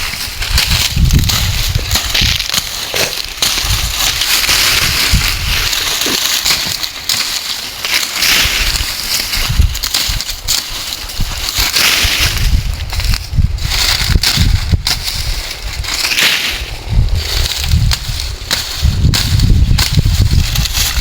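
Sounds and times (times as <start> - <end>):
dull low thumps: 0.0 - 2.6, 12.3 - 15.9, 16.6 - 21.0
dry stalks crackling and rustling: 0.0 - 21.0.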